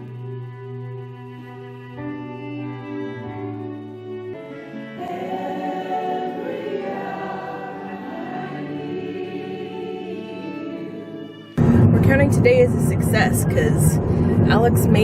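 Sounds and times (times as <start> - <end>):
held instrumental chords: 0.0 - 15.0
group of voices singing: 4.8 - 11.6.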